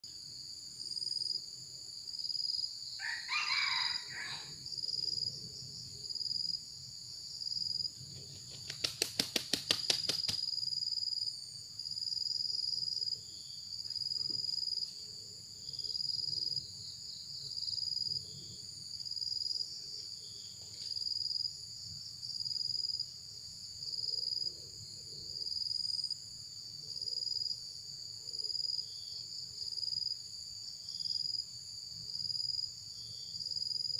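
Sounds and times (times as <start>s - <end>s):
insects chirring: 0.1s - 33.9s
rooster crowing: 3.0s - 4.6s.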